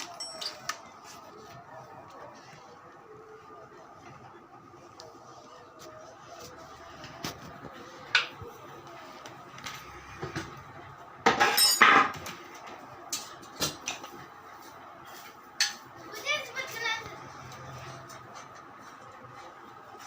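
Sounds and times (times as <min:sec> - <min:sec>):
metal tools clinking and knocking: 0:00.0 - 0:00.8, 0:11.3 - 0:12.3.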